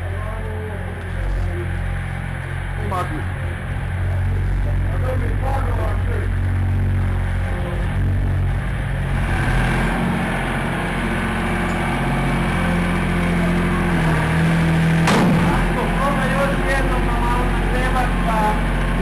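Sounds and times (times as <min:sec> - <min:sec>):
loader engine running: 0:00.0 - 0:19.0.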